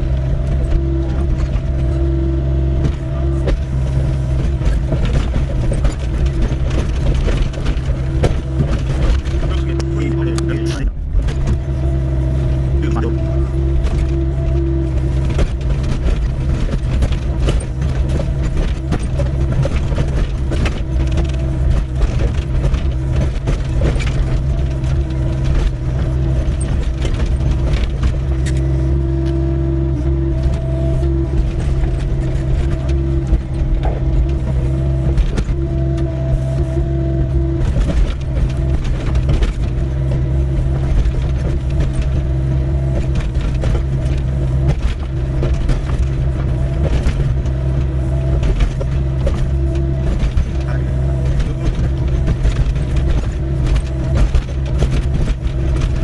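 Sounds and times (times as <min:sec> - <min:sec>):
excavator diesel engine running: 0:00.0 - 0:56.0
hydraulic whine: 0:00.0 - 0:56.0.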